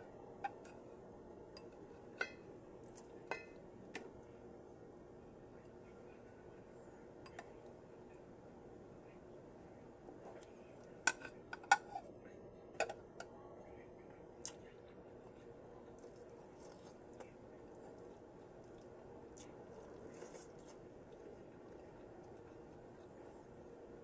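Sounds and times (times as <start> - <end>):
crackly chewing: 1.6 - 4.2, 14.1 - 24.0
cutlery clinking against dish: 11.1 - 12.0.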